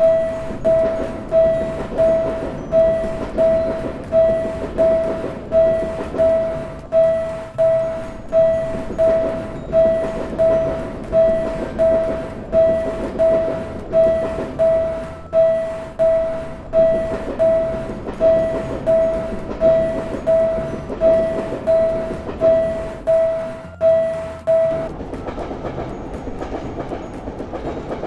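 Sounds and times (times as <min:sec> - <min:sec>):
level crossing warning bell: 0:00.0 - 0:28.0
passing train rumble: 0:00.0 - 0:28.0.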